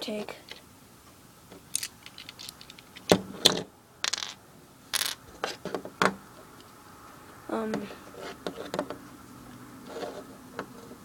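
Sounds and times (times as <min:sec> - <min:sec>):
plastic bricks clicking and clattering: 0:01.8 - 0:02.9, 0:04.1 - 0:04.4, 0:05.0 - 0:05.2.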